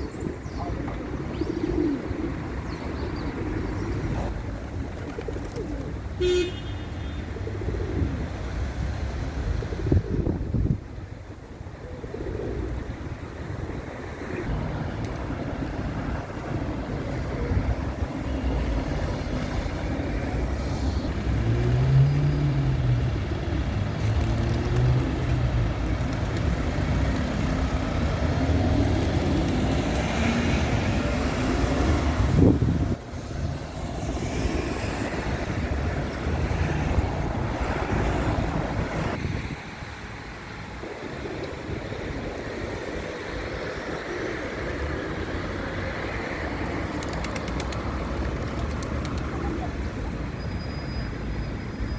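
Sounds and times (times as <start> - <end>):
pigeons cooing: 0.0 - 6.4, 7.2 - 8.6, 11.5 - 14.5.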